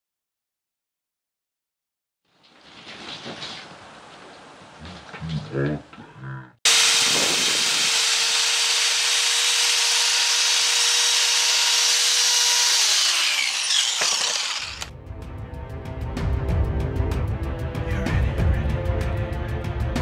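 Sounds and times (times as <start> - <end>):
electric grinder grinding steel: 6.7 - 14.9
motor spinning down: 6.7 - 14.9.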